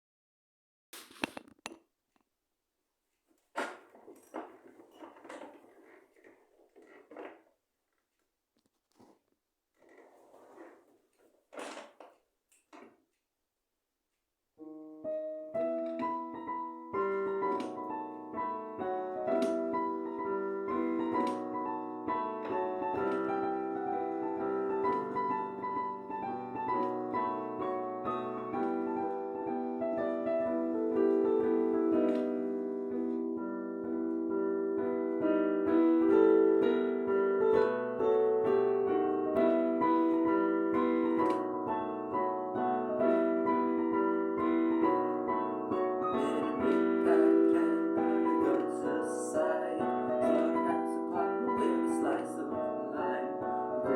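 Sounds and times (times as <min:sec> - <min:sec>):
piano playing: 0:14.6 - 0:53.9.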